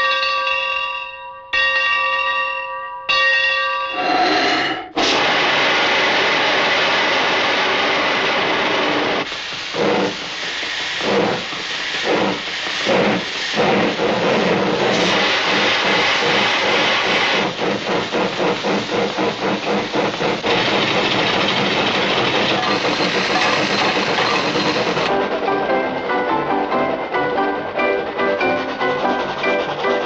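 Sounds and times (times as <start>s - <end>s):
steam train chuffing: 4.9s - 30.0s
rhythmic chugging and clatter: 9.2s - 30.0s.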